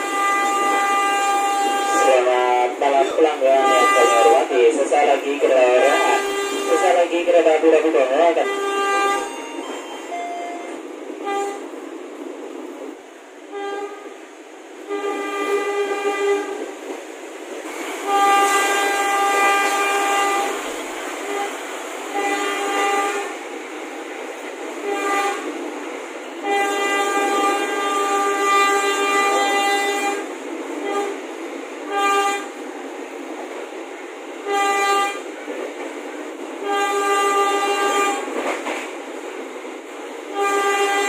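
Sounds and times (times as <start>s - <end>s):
train horn blasts: 0.0s - 4.5s, 5.7s - 7.1s, 8.0s - 11.7s, 13.5s - 14.2s, 14.8s - 16.6s, 18.0s - 20.6s, 21.2s - 23.4s, 24.8s - 25.5s, 26.4s - 31.2s, 31.8s - 32.6s, 34.4s - 35.2s, 36.6s - 38.4s, 40.3s - 41.0s.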